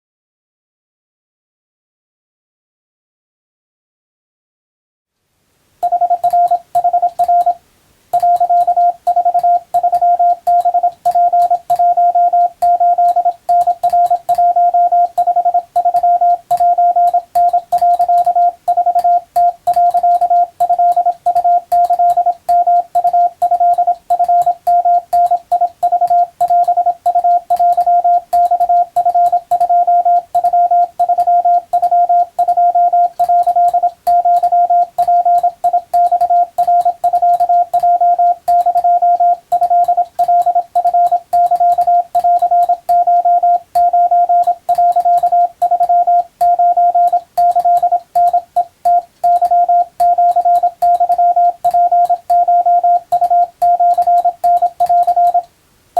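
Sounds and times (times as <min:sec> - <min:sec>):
morse code beeping: 0:05.8 - 0:07.6, 0:08.2 - 0:55.4.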